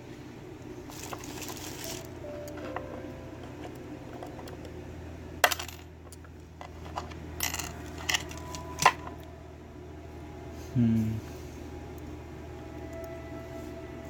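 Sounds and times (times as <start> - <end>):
small metal pieces clinking: 0.9 - 2.8, 5.4 - 9.2.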